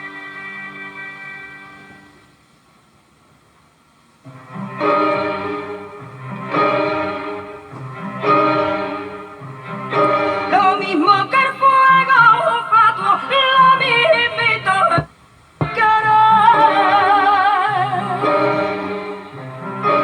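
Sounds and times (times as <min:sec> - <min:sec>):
instrumental accompaniment: 0:04.3 - 0:20.0
woman singing with vibrato: 0:10.3 - 0:19.4.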